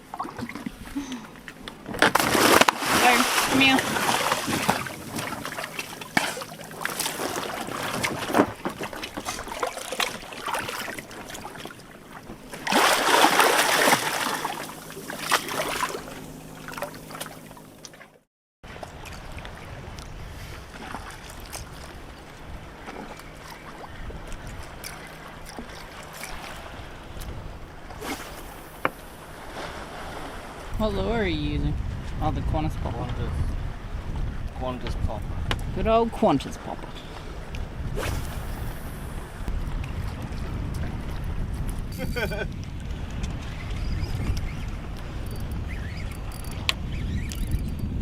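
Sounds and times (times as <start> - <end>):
water sloshing around boat: 0.0 - 48.0
wind noise: 1.8 - 11.6, 18.9 - 23.0, 26.4 - 48.0.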